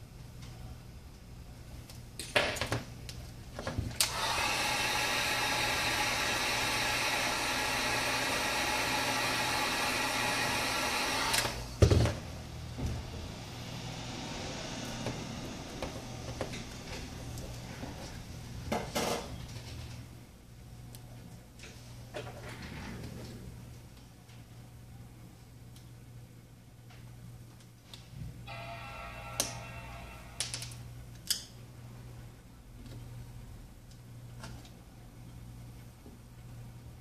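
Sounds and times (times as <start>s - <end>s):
quiet steady hum: 0.0s - 4.1s, 11.4s - 37.0s
heat gun blowing: 4.0s - 11.7s.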